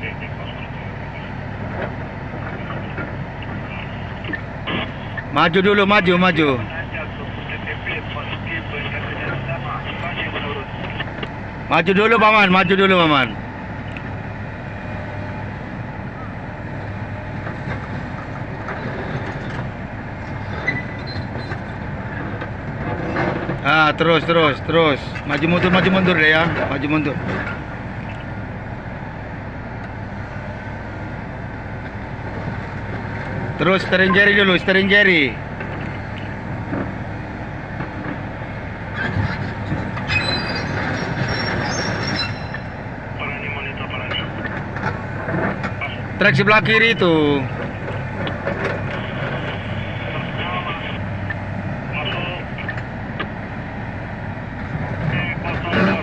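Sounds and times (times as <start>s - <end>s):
excavator diesel engine running: 0.0s - 56.0s
steel tracks clanking: 37.8s - 42.9s
high metallic track squeal: 40.0s - 42.9s.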